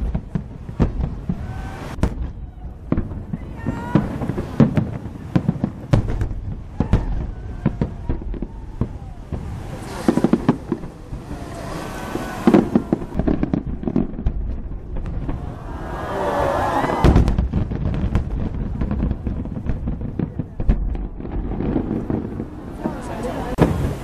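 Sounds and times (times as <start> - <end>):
firework bursts and bangs: 0.0 - 24.0
firework crackling volleys: 0.0 - 24.0
rising firework whistles: 1.0 - 5.4, 6.0 - 14.2, 15.0 - 18.2.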